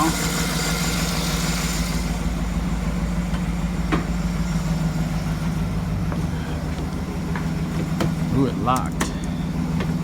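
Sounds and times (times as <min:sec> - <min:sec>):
engine idling: 0:00.0 - 0:10.0.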